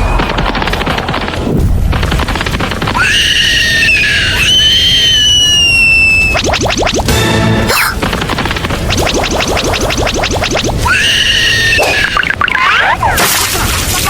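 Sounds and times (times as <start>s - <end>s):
rapid crackling: 0.0s - 14.0s
high-pitched shriek: 10.8s - 12.8s.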